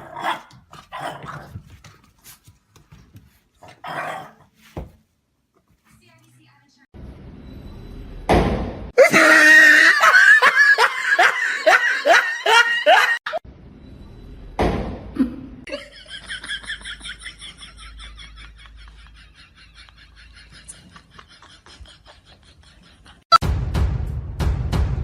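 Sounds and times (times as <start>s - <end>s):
person laughing hard: 9.0s - 13.4s.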